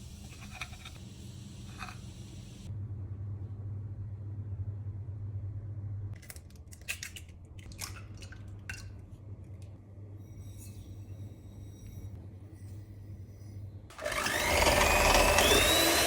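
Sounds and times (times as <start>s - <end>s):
steady low hum: 7.2s - 13.9s.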